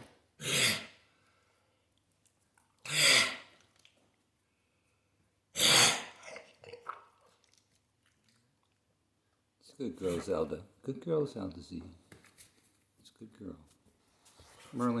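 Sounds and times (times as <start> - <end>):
dog coughing: 0.4 - 1.0, 2.9 - 3.5, 5.6 - 6.4.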